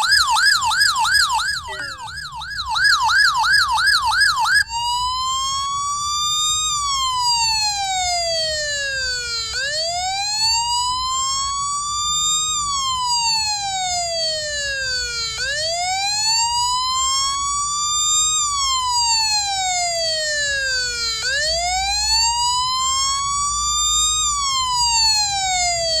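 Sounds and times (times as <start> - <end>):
wailing siren: 0.0 - 26.0.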